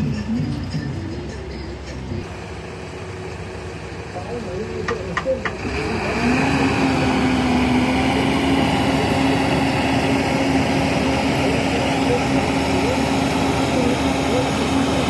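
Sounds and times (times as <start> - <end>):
heavy vehicle engine running: 0.0 - 15.0
steady whine: 6.6 - 15.0.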